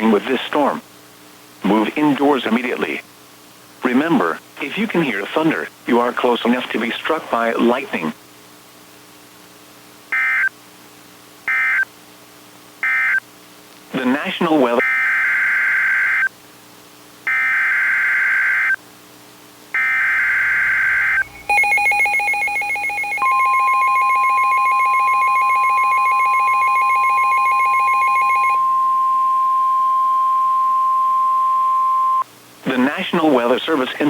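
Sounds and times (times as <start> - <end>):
steady alarm tone: 10.2 - 10.5, 11.5 - 11.9, 12.8 - 13.2, 14.8 - 16.3, 17.3 - 18.8, 19.8 - 32.2
harsh data bursts: 19.8 - 29.6
pulsing buzzy tone: 19.8 - 32.2.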